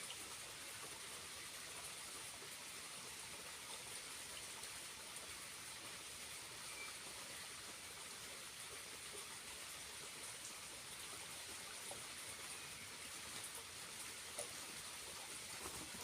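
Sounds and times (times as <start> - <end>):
small waterfall hissing: 0.0 - 16.0.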